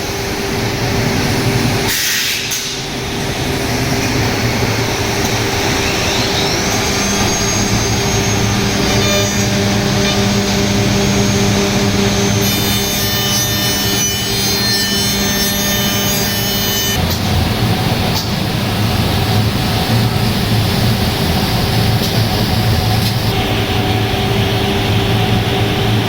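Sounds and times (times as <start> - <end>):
loud rushing noise: 0.0 - 12.8
router spindle whine: 4.7 - 17.0.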